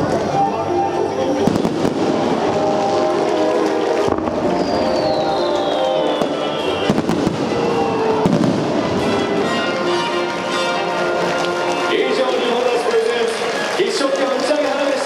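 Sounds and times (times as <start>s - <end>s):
music over pa: 0.0s - 13.8s
fireworks bangs and crackles: 0.0s - 15.0s
falling firework whistle: 1.2s - 9.6s.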